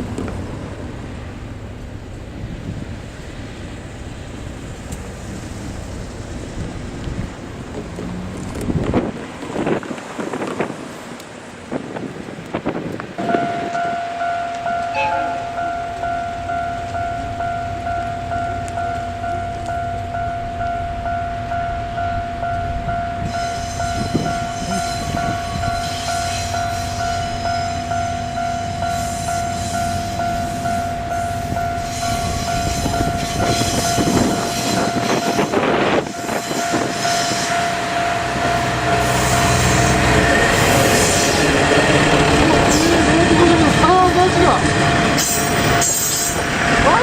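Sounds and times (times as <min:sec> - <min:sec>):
diesel locomotive running: 0:00.0 - 0:47.0
level crossing warning alarm: 0:13.2 - 0:47.0.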